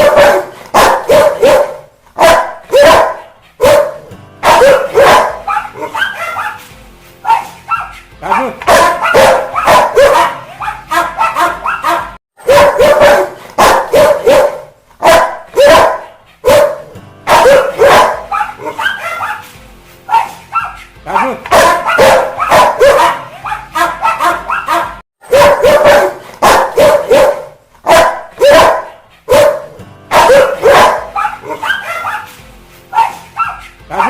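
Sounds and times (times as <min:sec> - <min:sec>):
dog barking aggressively: 0:00.0 - 0:06.6, 0:07.3 - 0:19.4, 0:20.1 - 0:32.3, 0:33.0 - 0:34.0.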